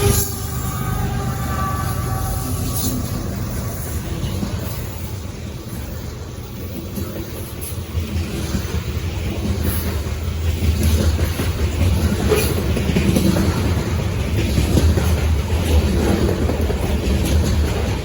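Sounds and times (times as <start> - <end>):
freight train rumble: 0.0 - 18.0
wheels clacking over rail joints: 0.0 - 18.0.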